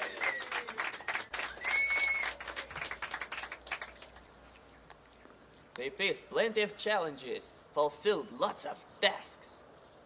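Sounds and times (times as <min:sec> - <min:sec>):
group applauding: 0:00.0 - 0:04.3.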